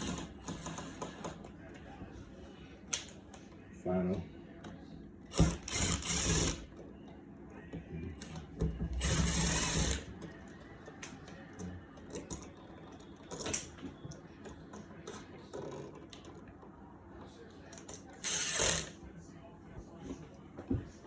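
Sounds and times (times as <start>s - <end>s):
power drill driving a screw: 0.0s - 1.3s, 5.3s - 6.6s, 9.0s - 10.1s, 18.2s - 19.0s.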